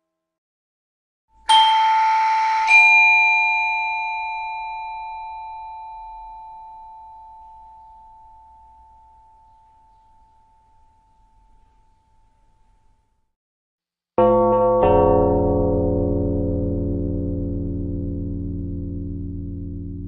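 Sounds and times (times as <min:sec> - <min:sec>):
two-tone doorbell chime: 0:01.5 - 0:11.6, 0:14.2 - 0:20.0.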